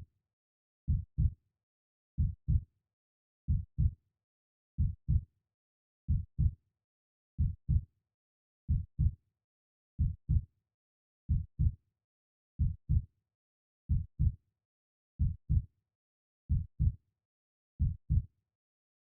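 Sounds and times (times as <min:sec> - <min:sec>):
slow heartbeat: 0:02.2 - 0:02.6, 0:03.5 - 0:03.9, 0:04.8 - 0:05.2, 0:07.4 - 0:07.8, 0:08.7 - 0:09.1, 0:10.0 - 0:10.4, 0:11.3 - 0:11.7, 0:12.6 - 0:13.0, 0:13.9 - 0:14.4, 0:15.2 - 0:15.6, 0:16.5 - 0:17.0, 0:17.8 - 0:18.2.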